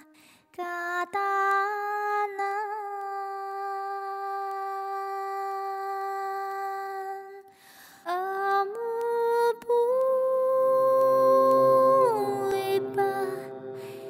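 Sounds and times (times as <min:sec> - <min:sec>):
singer breathing: 0:07.5 - 0:08.1, 0:13.3 - 0:14.0.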